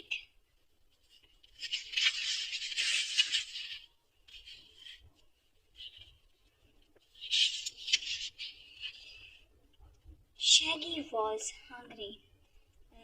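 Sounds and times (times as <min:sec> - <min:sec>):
book page rustling: 0:00.9 - 0:09.5.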